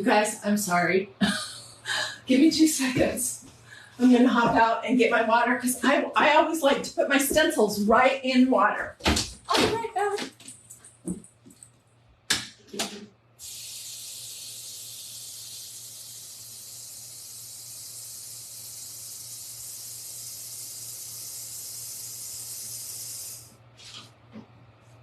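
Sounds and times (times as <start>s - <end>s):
steady hiss: 13.4s - 23.6s.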